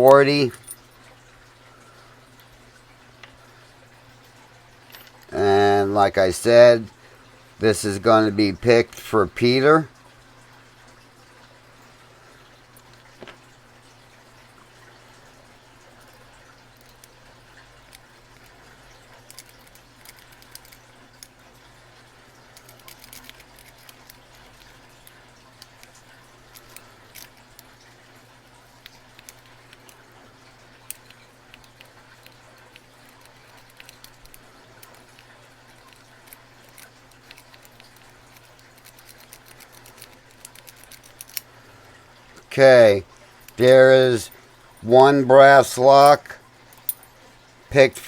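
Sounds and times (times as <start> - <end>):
faint steady hum: 0.0 - 48.0
lock pick clicks and scrapes: 30.9 - 41.5.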